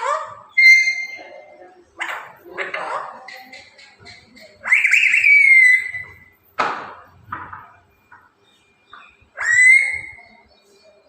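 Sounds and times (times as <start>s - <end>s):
parrot whistling: 0.0s - 2.4s, 4.5s - 6.3s, 9.3s - 10.5s.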